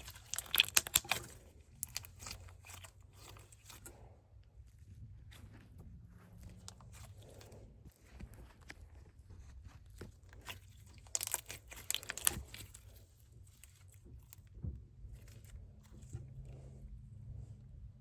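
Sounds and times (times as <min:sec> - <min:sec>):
slime crackling and popping: 0:00.0 - 0:04.1, 0:10.1 - 0:14.5.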